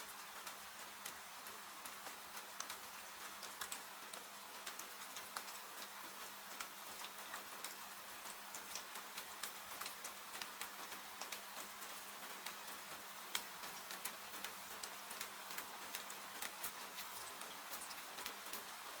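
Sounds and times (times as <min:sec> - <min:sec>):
rain hissing: 0:00.0 - 0:19.0.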